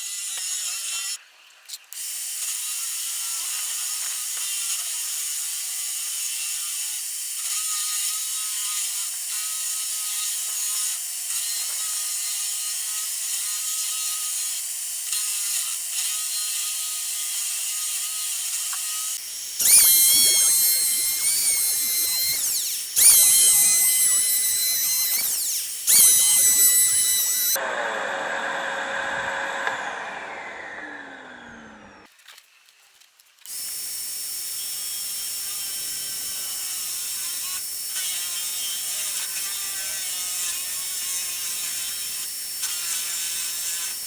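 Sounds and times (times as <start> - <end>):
high-pitched motor spinning up: 19.1 - 28.3, 33.5 - 44.0
power tool with vacuum running: 19.2 - 32.1, 33.5 - 44.0.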